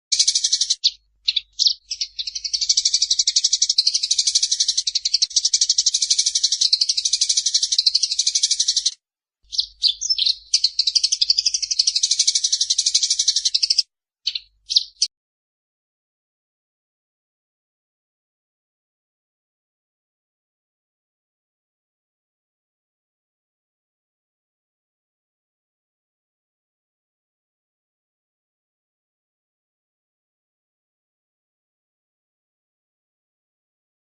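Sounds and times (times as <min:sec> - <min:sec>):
sparrow chirping: 0:00.1 - 0:15.1.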